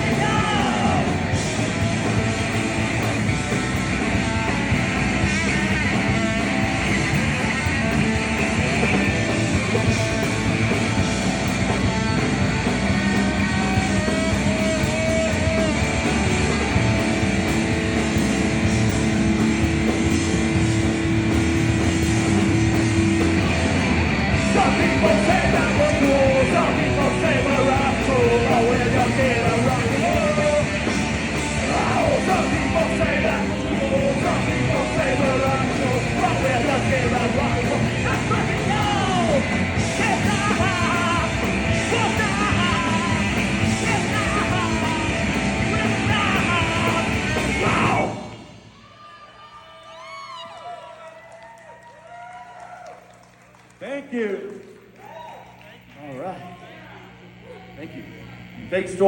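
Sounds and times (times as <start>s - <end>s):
punk rock band playing: 0.0s - 48.7s
electric guitars: 0.0s - 48.8s
person singing: 24.4s - 30.9s, 31.6s - 48.4s.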